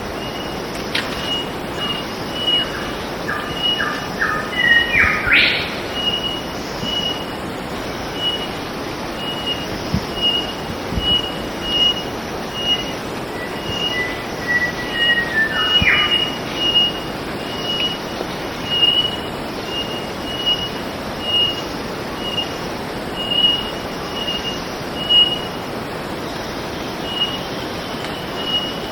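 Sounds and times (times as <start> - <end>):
bird whistling: 1.2 - 7.3, 9.2 - 18.0, 18.6 - 22.5, 23.2 - 25.5, 28.2 - 28.9.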